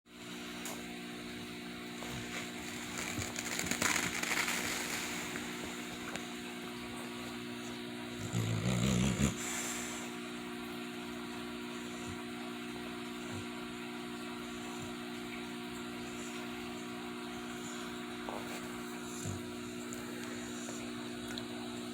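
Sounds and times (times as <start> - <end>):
steady electrical hum: 0.1 - 21.9
dog snoring: 8.1 - 10.1, 17.5 - 20.9.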